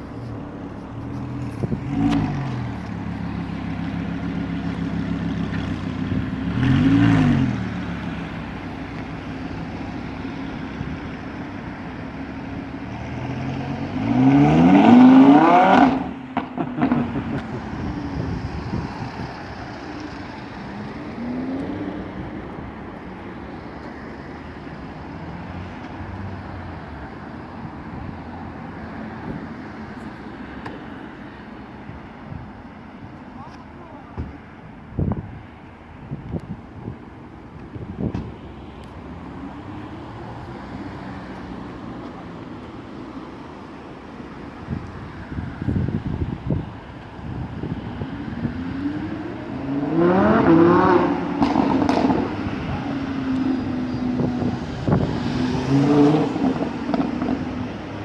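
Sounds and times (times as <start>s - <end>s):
sports car engine revving: 0.0s - 11.2s, 11.9s - 23.2s, 47.2s - 58.0s.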